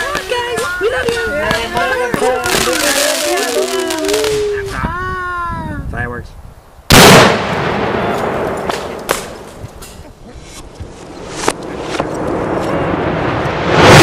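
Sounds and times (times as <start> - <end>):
fireworks banging: 0.0 - 4.9, 6.9 - 10.0
fireworks crackling and popping: 0.0 - 5.0, 6.9 - 14.0.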